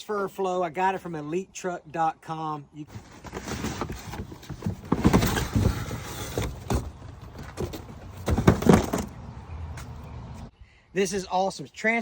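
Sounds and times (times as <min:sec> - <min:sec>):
knocks and thumps of handling: 0:02.9 - 0:09.2.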